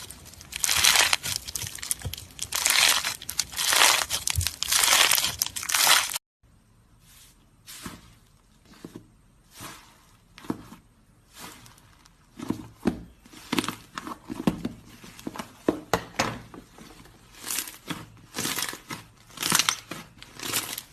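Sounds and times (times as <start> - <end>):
slime squeezed crackling and popping: 0.0 - 6.2.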